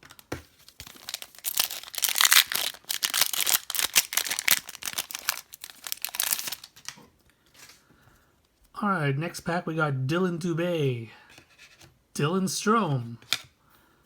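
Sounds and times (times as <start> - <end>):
wrapper crinkling and tearing: 0.0 - 7.0.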